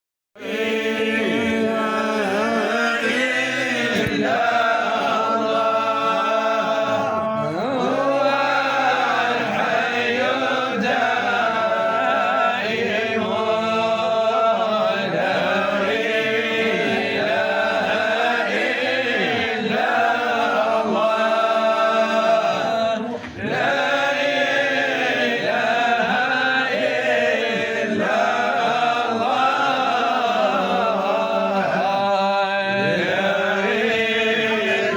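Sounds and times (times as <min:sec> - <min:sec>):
man chanting: 0:00.5 - 0:04.2, 0:04.8 - 0:15.8, 0:27.4 - 0:34.9.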